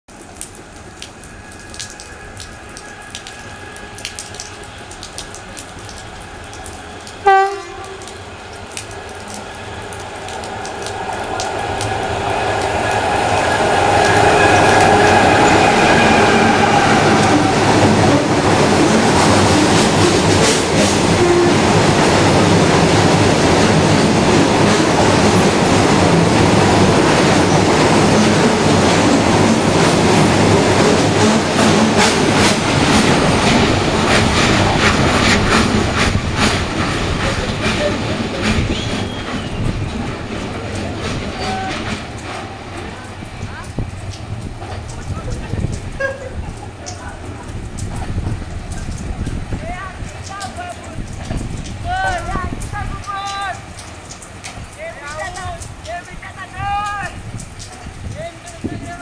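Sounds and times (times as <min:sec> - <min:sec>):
train rumble and wheel clatter: 0:00.1 - 0:59.0
locomotive horn blast: 0:07.2 - 0:08.2, 0:14.2 - 0:19.1, 0:20.6 - 0:21.8.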